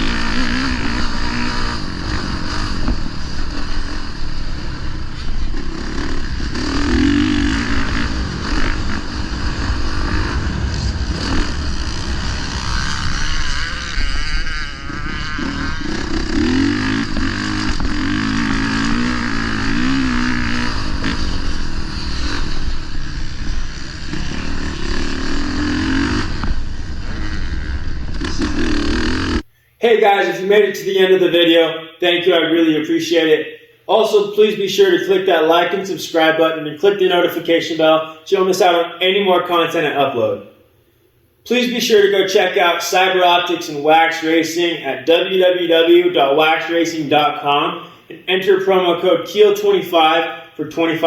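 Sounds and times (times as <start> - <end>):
dirt bike engine revving: 0.0 - 29.5.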